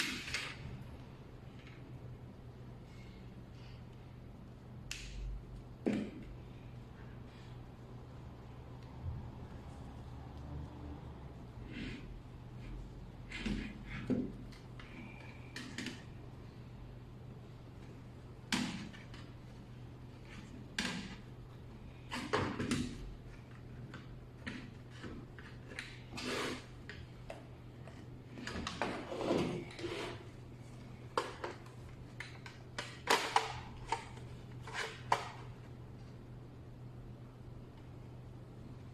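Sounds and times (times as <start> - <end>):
low electrical hum: 0.0 - 38.9
hands scraping and sliding parts: 23.3 - 30.4.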